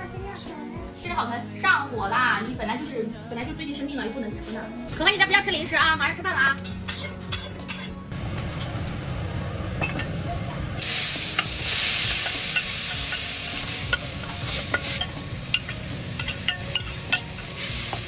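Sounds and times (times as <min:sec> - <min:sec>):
spatula stirring against pan: 0:06.6 - 0:07.9, 0:11.4 - 0:18.0
food sizzling in hot oil: 0:10.8 - 0:18.0.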